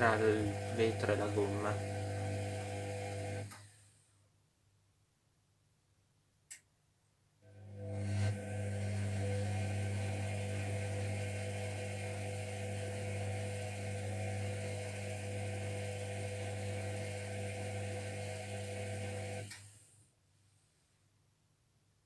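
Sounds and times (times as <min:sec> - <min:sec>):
washing machine motor hum: 0:00.0 - 0:03.8, 0:07.4 - 0:19.7.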